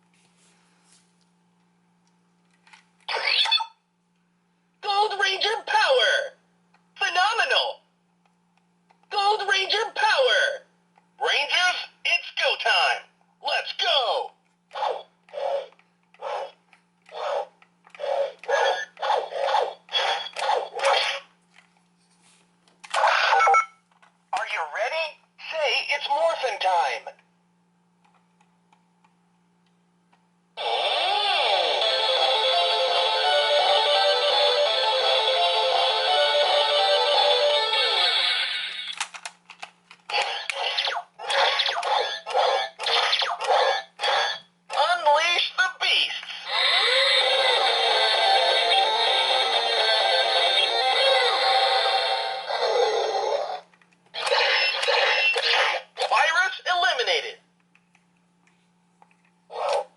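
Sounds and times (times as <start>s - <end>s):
faint steady hum: 0.0s - 59.9s
electronic toy sound effects: 3.1s - 3.7s, 18.0s - 21.2s, 30.6s - 32.5s, 40.1s - 44.4s, 45.4s - 53.6s, 54.2s - 56.1s
toy hissing sound effects: 18.0s - 21.2s, 40.1s - 44.2s.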